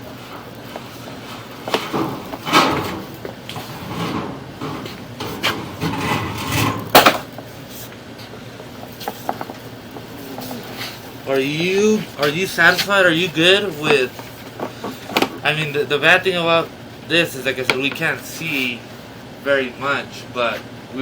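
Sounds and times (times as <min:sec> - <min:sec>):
equipment knocking and scraping: 0:01.4 - 0:07.4.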